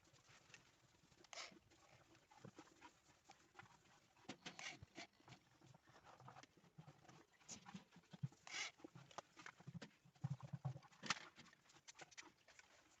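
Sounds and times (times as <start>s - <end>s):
small clicks and light knocks: 7.8s - 12.7s.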